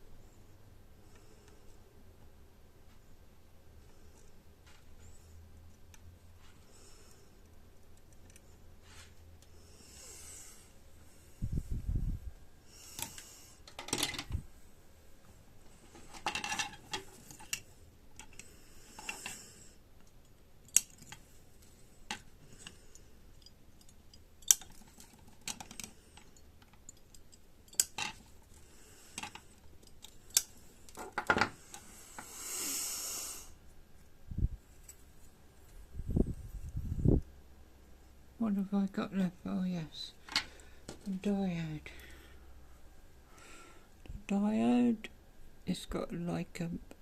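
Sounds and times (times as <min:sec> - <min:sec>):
small tools clicking and tapping: 0:16.0 - 0:19.4, 0:20.0 - 0:21.3, 0:22.1 - 0:32.3.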